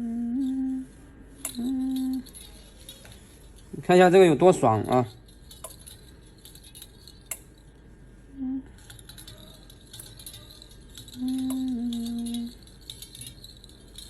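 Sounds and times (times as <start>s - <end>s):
electric hum: 0.0s - 14.0s
tools clicking on glass: 1.4s - 3.2s, 4.8s - 7.6s, 8.8s - 14.0s.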